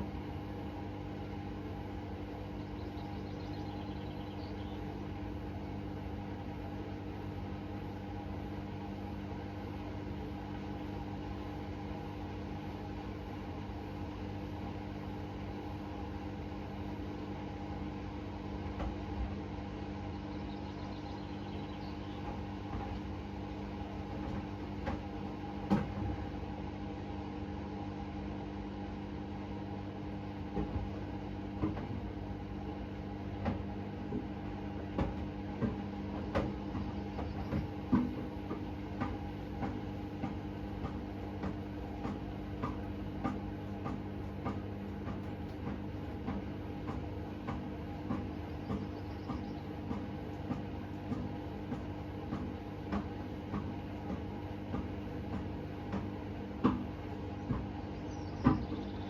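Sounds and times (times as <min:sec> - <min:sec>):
washing machine motor hum: 0:00.0 - 0:59.0.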